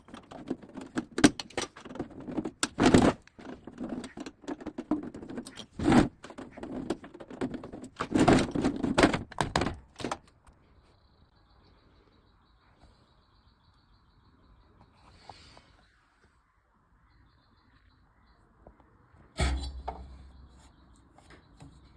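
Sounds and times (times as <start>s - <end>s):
hard objects clattering: 0.0s - 10.2s.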